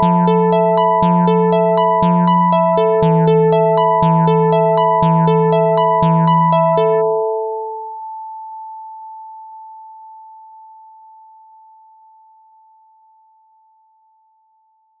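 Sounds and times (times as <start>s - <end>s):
held synthesizer note: 0.0s - 8.0s.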